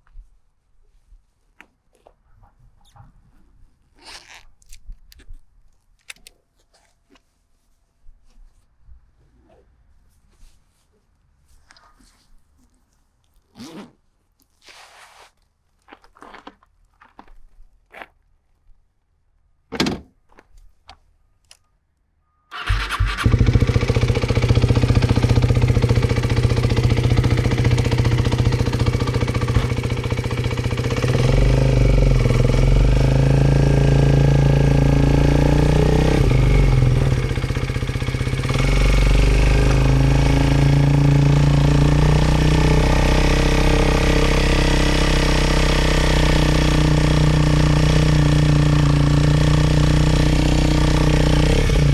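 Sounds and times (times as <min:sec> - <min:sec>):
motorcycle engine idling: 0:22.5 - 0:51.9.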